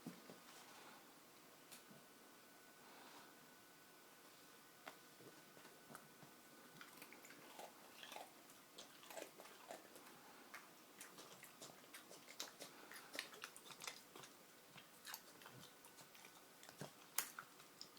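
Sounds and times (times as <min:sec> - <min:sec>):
dog chewing crunches: 0:06.8 - 0:17.9.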